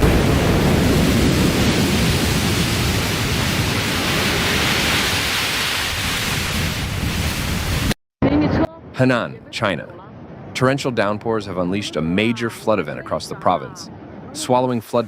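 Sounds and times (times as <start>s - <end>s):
rushing water: 0.0s - 8.0s.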